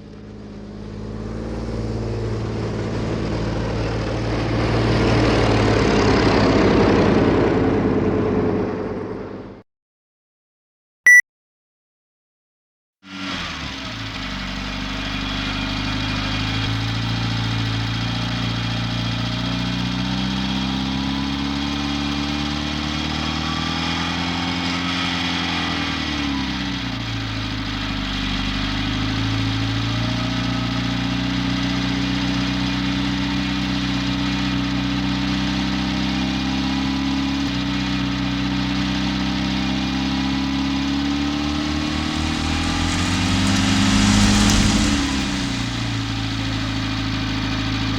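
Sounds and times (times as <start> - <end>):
truck engine running: 26.6 - 47.9.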